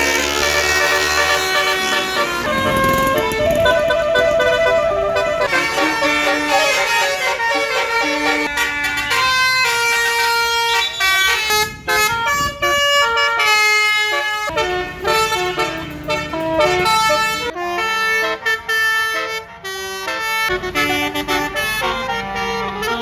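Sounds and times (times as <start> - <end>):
bus horn playing melody: 0.0 - 23.0
bus engine rumble: 14.3 - 17.8.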